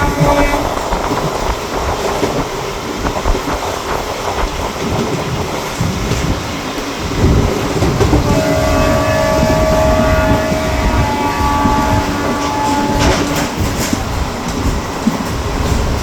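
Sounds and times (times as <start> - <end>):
train rumbling along track: 0.0 - 16.0.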